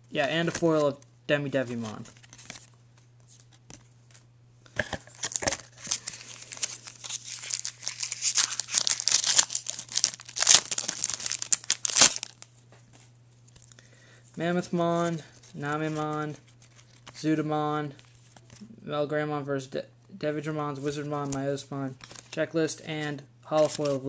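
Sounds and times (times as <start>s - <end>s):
wrapper tearing and crinkling: 5.0s - 12.4s.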